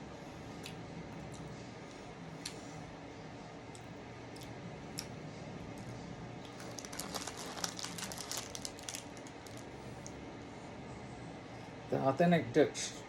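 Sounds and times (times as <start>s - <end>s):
snack wrapper crinkling: 6.5s - 10.1s.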